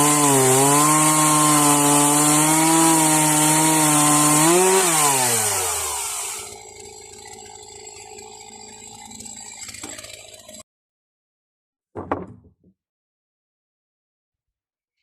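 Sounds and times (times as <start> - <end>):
chainsaw cutting wood: 0.0 - 10.6.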